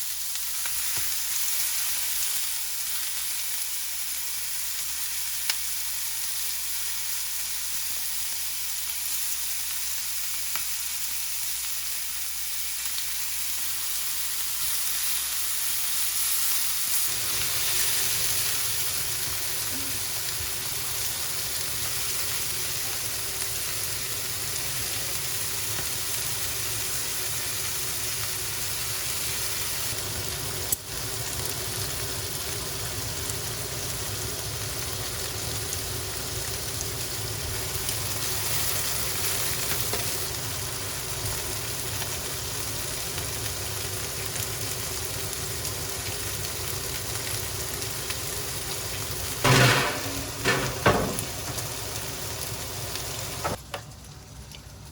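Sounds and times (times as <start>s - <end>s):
food sizzling in a frying pan: 0.0s - 54.9s.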